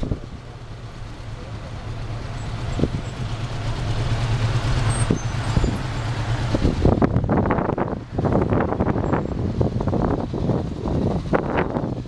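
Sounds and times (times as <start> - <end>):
car engine and road noise: 0.0 - 12.0
rough buffeting and thumps: 0.0 - 12.0.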